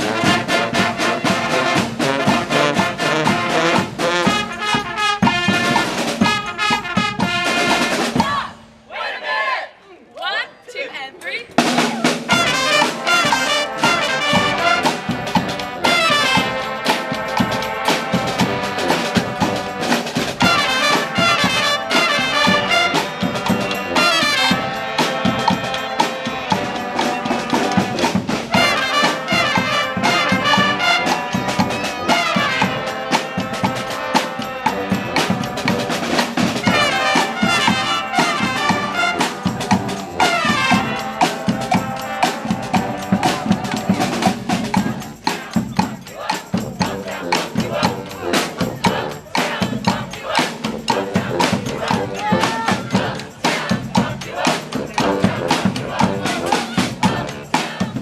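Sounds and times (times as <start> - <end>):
brass band playing: 0.0 - 9.6, 10.2 - 58.0.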